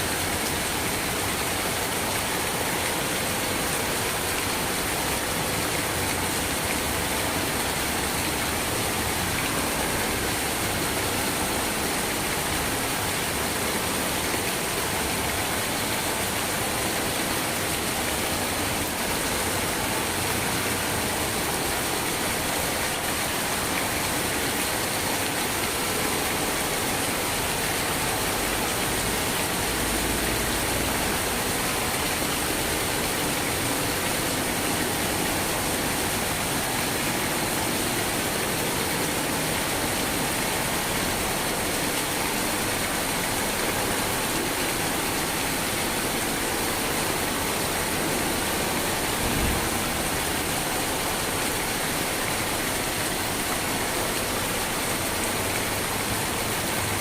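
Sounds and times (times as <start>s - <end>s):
rain hissing: 28.3s - 54.6s.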